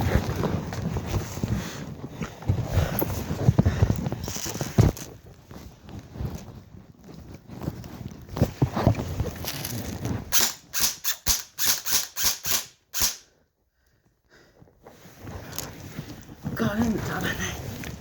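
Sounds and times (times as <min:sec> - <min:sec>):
rustling: 0:00.0 - 0:12.2, 0:14.0 - 0:18.0
airsoft gun shots: 0:10.3 - 0:13.2.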